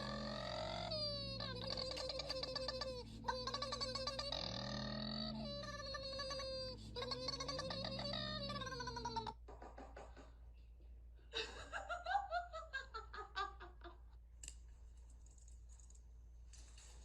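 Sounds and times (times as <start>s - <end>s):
person laughing: 0.0s - 9.3s, 11.3s - 14.2s.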